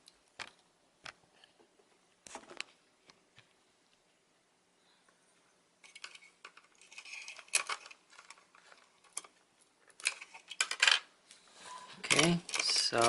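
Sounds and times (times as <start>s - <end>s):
laptop parts clicking and rattling: 5.8s - 11.1s, 12.0s - 13.0s.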